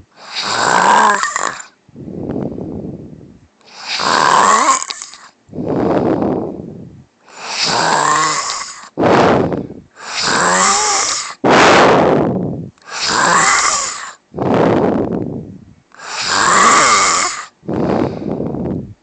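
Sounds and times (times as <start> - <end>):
woman snoring loudly: 0.2 - 1.8, 3.7 - 6.5, 7.3 - 12.2, 12.9 - 15.2, 16.0 - 18.6.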